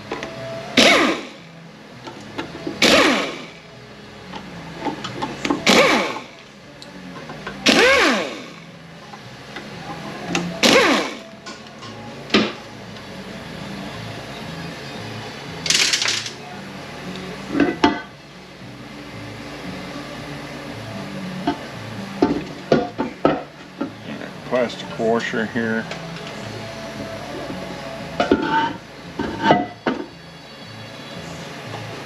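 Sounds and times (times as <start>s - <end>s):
cordless power driver whining: 0.8s - 1.4s, 2.8s - 3.6s, 5.5s - 6.5s, 7.6s - 8.6s, 10.3s - 11.2s.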